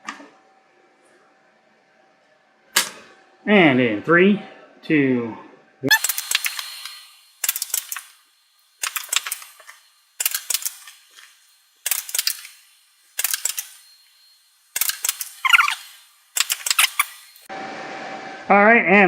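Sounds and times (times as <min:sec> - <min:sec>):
toy blaster primed and fired: 0:05.9 - 0:08.2, 0:08.8 - 0:13.9, 0:14.7 - 0:17.5.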